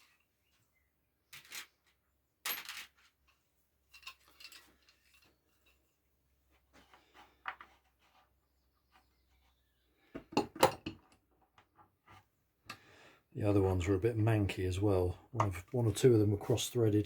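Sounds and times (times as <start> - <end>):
small metal clinks and clatters: 1.3 - 5.9.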